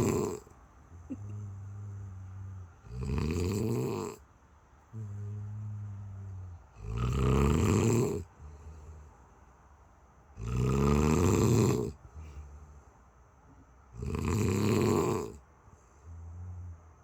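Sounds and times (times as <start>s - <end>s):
heavy snoring: 0.0s - 0.5s, 1.1s - 4.2s, 5.0s - 8.4s, 10.4s - 12.0s, 14.0s - 15.4s.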